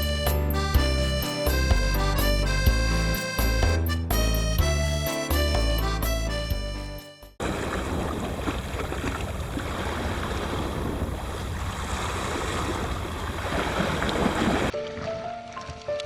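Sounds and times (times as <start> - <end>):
wind: 0.0 - 16.0
sea noise: 7.4 - 16.0.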